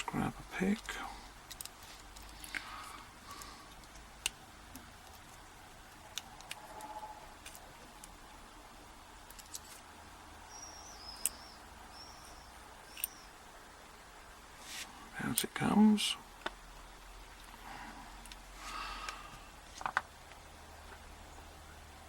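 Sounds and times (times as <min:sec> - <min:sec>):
metal lock pick clicks: 0:01.4 - 0:02.6, 0:12.9 - 0:13.2
faint bird chirps: 0:10.4 - 0:13.4.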